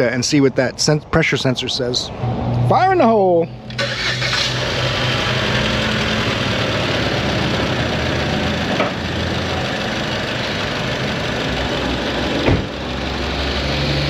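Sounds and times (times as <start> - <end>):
car engine idling: 3.7 - 13.7.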